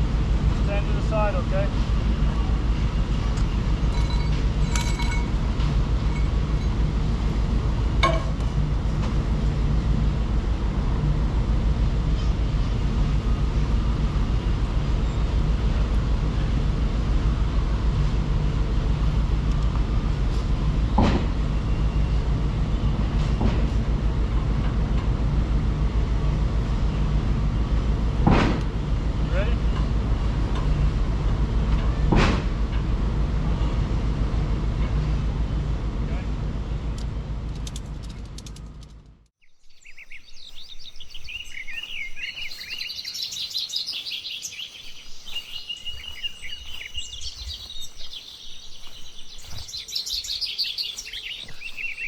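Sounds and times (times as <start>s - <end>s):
sharp metallic clinks: 3.9s - 7.0s.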